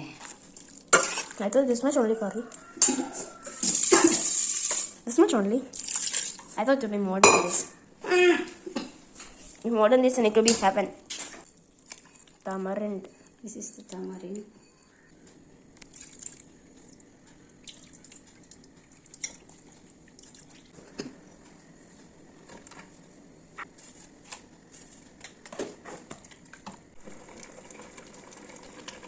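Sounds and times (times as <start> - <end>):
water drips and splashes: 5.7 - 6.5, 15.8 - 17.0, 17.6 - 20.8.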